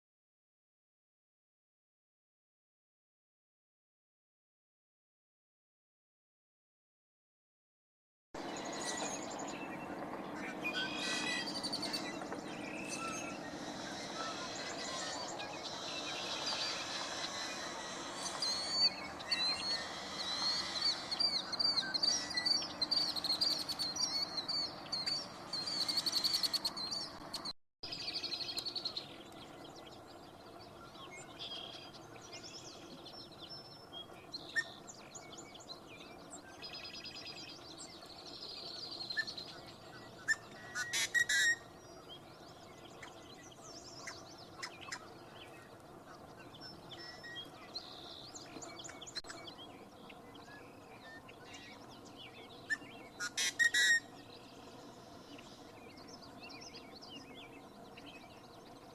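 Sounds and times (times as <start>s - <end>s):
faint steady background noise: 8.4s - 58.9s
wild birds singing and calling: 8.4s - 58.9s.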